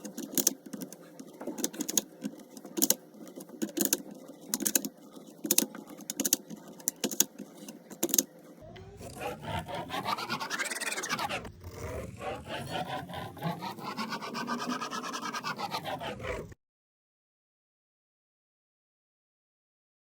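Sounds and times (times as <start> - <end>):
pen scratching on paper: 0.0 - 8.2, 9.0 - 16.6
pen clicks: 0.0 - 8.3.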